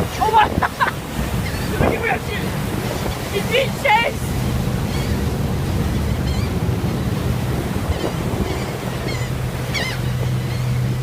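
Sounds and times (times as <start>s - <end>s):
churned water behind ferry: 0.0s - 11.0s
ferry engine hum: 0.0s - 11.0s
high wavering bird calls: 4.8s - 5.2s, 5.9s - 7.0s, 7.8s - 11.0s.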